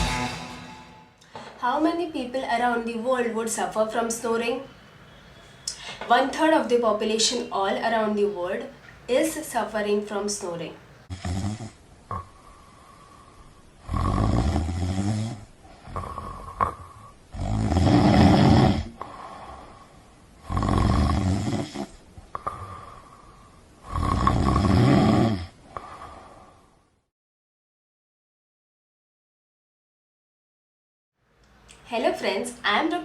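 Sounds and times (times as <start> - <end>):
person snoring loudly: 11.1 - 12.4, 13.8 - 19.7, 20.4 - 23.1, 23.8 - 26.6
quiet breathing: 11.1 - 13.8, 15.2 - 17.4, 18.8 - 20.6, 21.5 - 24.2, 25.5 - 27.1.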